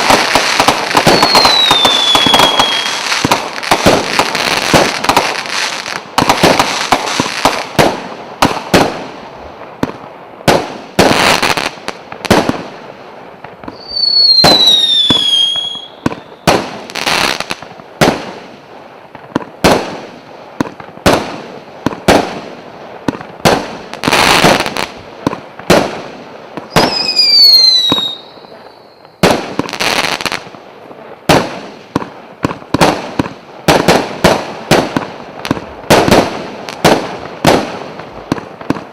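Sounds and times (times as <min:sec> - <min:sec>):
firework launch and burst bangs: 0:00.0 - 0:09.2
firework falling whistle: 0:01.0 - 0:03.2, 0:13.6 - 0:16.6, 0:26.7 - 0:29.2.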